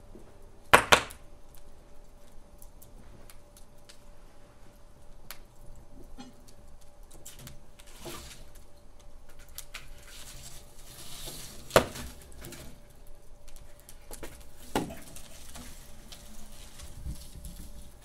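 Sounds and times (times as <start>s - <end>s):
fire popping: 0.0s - 18.0s
wood fire crackling: 0.0s - 18.0s.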